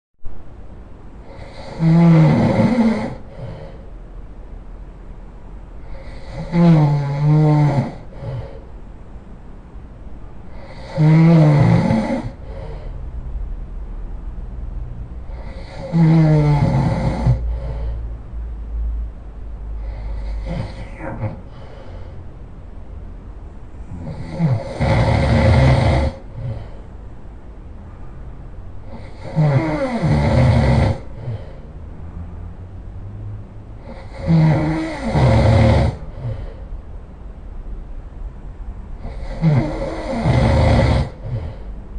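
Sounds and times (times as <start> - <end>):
low rumble of breathing: 0.2 - 41.9
person snoring loudly: 1.2 - 3.8, 5.8 - 8.6, 10.5 - 12.9, 15.2 - 18.0, 19.8 - 22.1, 23.9 - 26.8, 28.9 - 31.7, 33.8 - 36.6, 39.0 - 41.6.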